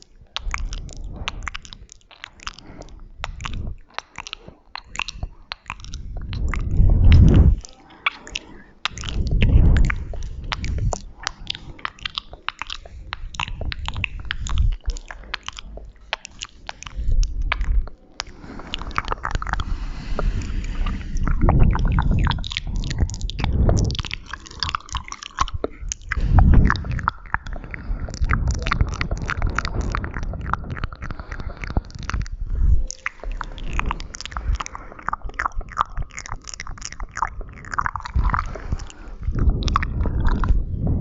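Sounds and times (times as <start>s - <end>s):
wet mouth clicks and smacks: 0.0s - 41.0s
breathy hiss: 18.0s - 22.0s.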